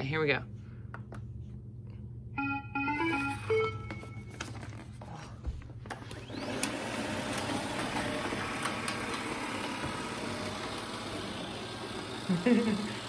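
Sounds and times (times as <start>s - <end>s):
robot vacuum motor whirring: 6.1s - 13.0s.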